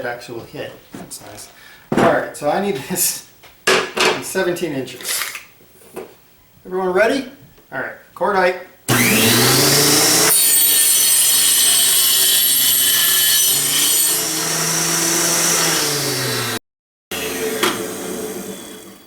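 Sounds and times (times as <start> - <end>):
saw blade cutting wood: 8.9 - 19.0
table saw whining: 8.9 - 19.0.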